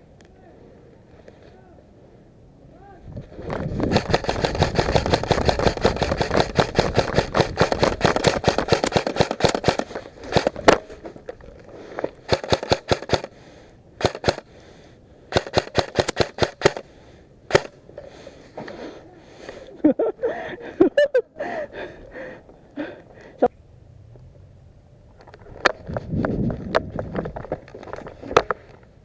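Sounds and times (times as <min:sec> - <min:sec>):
airsoft guns firing bursts: 0:03.5 - 0:11.0, 0:12.2 - 0:13.4, 0:14.0 - 0:14.5, 0:15.3 - 0:16.9, 0:17.5 - 0:17.8.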